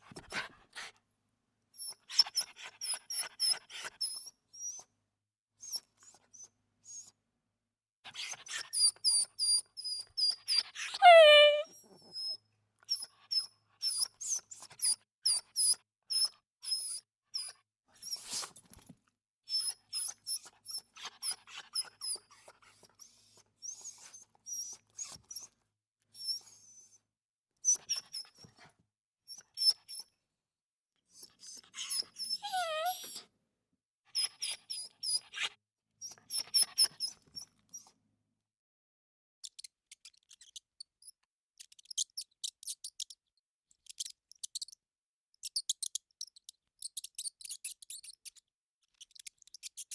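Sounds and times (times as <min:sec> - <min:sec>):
animal squeaks and whimpers: 0:01.8 - 0:04.9, 0:08.1 - 0:18.6, 0:19.5 - 0:25.6, 0:26.2 - 0:27.0, 0:27.6 - 0:28.7, 0:29.3 - 0:30.1, 0:31.1 - 0:33.3, 0:34.2 - 0:38.0.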